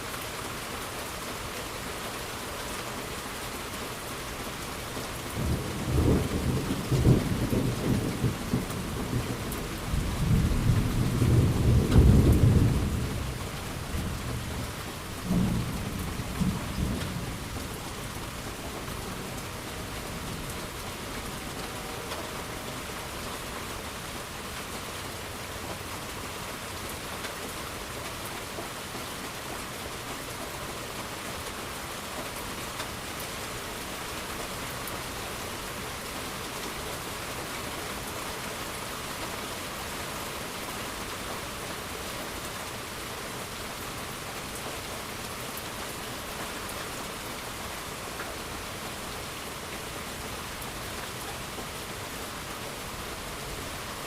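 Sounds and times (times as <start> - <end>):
steady rain: 0.0 - 54.0
rolling thunder: 5.3 - 18.2.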